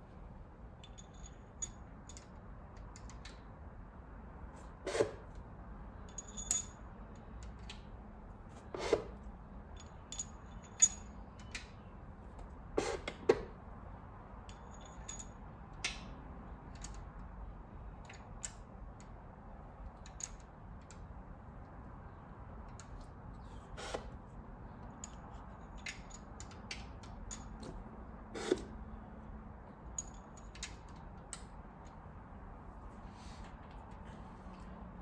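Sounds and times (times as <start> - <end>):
metal parts clinking: 0.8 - 3.3, 6.1 - 6.8, 9.7 - 11.6, 14.5 - 15.4.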